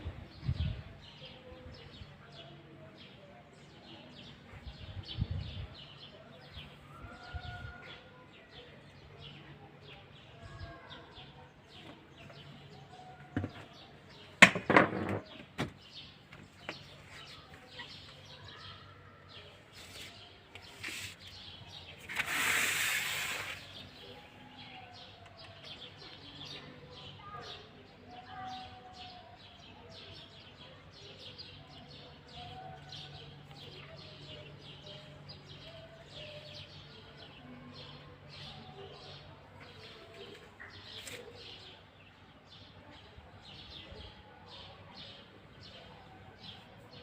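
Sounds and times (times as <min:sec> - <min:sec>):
small birds chirping: 0:15.2 - 0:47.0
rushing hiss: 0:22.1 - 0:23.8.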